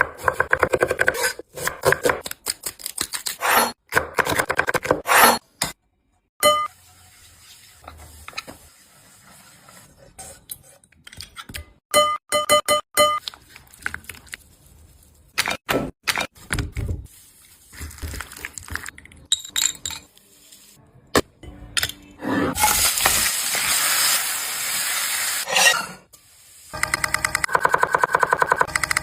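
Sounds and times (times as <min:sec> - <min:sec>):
food sizzling in hot oil: 0:22.6 - 0:25.6.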